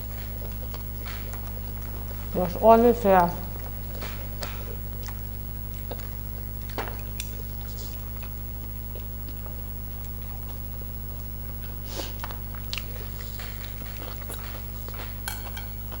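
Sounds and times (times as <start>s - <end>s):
steady low hum: 0.0s - 16.0s
cutlery and dishes clinking: 15.2s - 15.8s.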